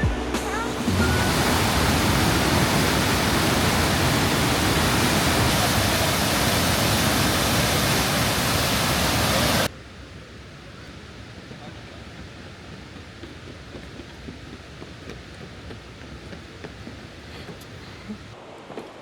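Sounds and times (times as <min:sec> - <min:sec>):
waterfall rushing: 0:00.0 - 0:09.7.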